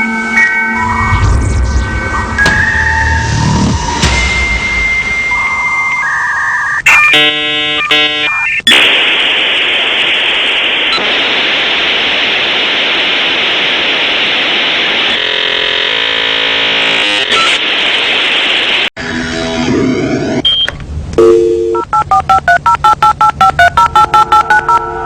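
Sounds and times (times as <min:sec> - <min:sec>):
static hiss: 0:08.8 - 0:18.9
dial-up modem tones: 0:20.5 - 0:24.9.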